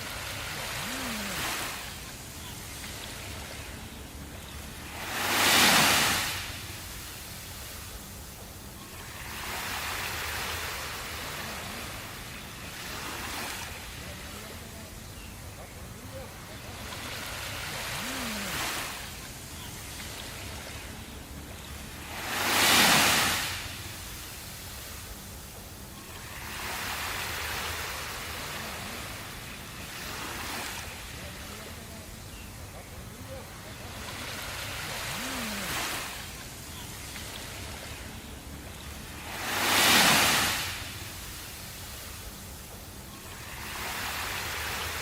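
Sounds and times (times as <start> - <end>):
ocean surf washing: 0.0 - 45.0.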